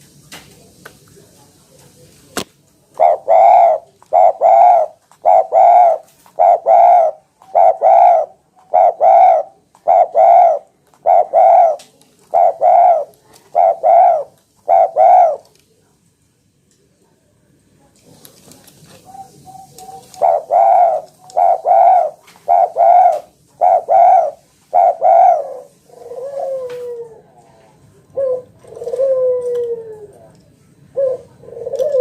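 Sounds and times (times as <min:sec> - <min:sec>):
dove cooing: 0:02.9 - 0:15.5, 0:18.8 - 0:30.3, 0:30.9 - 0:32.0.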